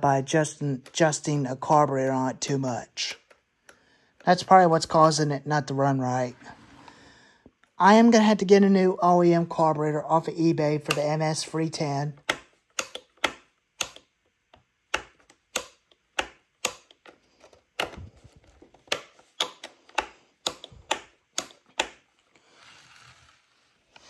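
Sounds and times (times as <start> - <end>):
sharp clicks and knocks: 10.8 - 11.5, 12.1 - 22.1
soft rustle: 22.2 - 24.0.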